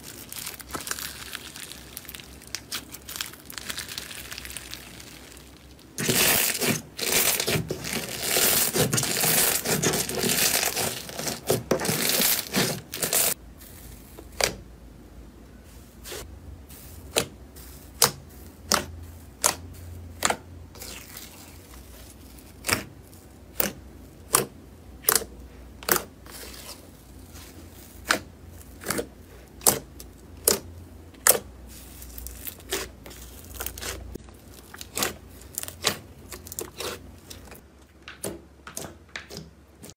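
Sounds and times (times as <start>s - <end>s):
crackling crinkling material: 0.0s - 13.4s, 19.4s - 23.8s, 25.9s - 38.0s.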